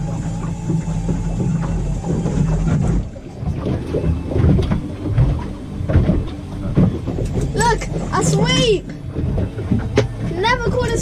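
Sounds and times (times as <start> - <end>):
knocks on boat: 0.0 - 11.0
wind buffeting microphone: 0.0 - 11.0.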